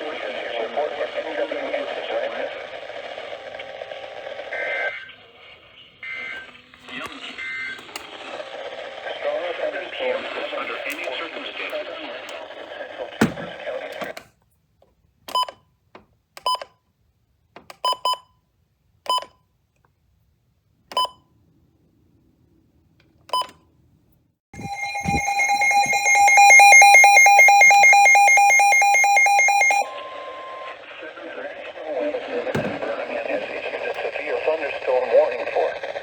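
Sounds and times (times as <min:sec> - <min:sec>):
short electronic beeps: 0:24.6 - 0:30.7
radio alert alarm pulsing beep: 0:24.6 - 0:30.8.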